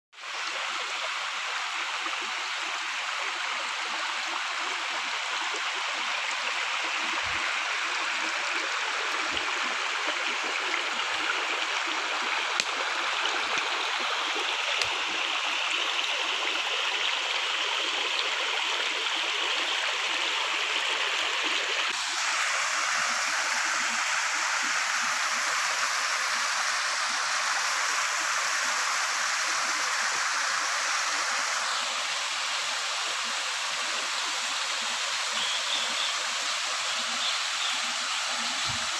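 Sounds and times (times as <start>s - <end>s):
waterfall rushing: 21.9s - 28.0s.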